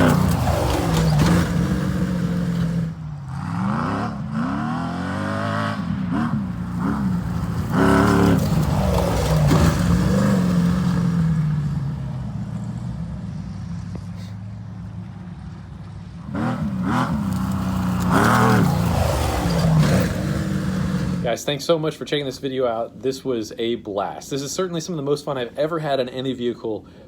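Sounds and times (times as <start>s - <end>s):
engine revving hard: 0.0s - 12.0s, 16.2s - 21.4s.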